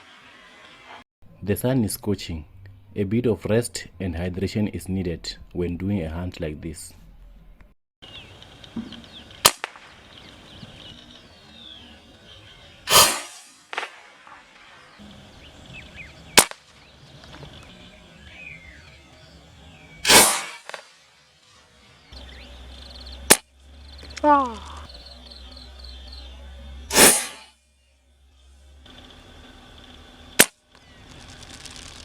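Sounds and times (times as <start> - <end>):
faint background music: 1.2 - 9.4, 10.0 - 12.9, 14.0 - 31.0
air rifle shots: 9.4 - 10.1, 12.9 - 14.9, 16.4 - 16.8, 20.0 - 21.0, 26.9 - 27.5.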